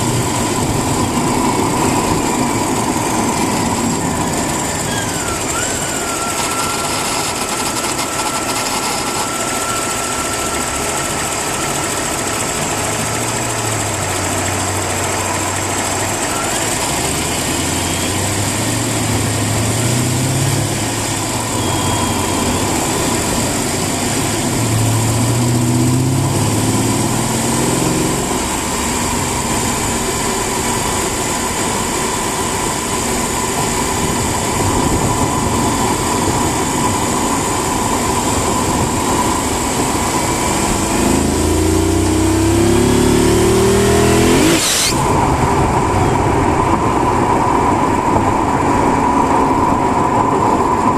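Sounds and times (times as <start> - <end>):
thin whine: 0.0 - 13.9, 20.6 - 26.8, 27.6 - 46.8
car engine revving: 0.0 - 48.0.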